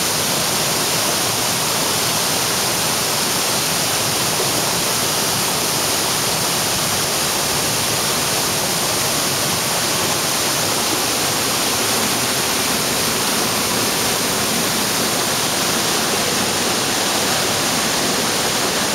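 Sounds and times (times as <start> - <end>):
waterfall rushing: 0.0 - 18.9.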